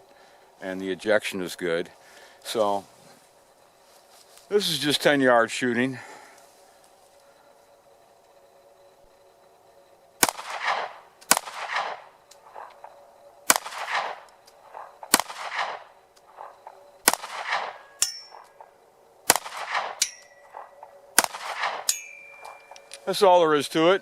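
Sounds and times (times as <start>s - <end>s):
pistol shots with echo: 10.2s - 18.6s, 19.2s - 22.8s
short metallic rings: 17.8s - 18.5s, 20.0s - 20.7s, 21.8s - 23.0s.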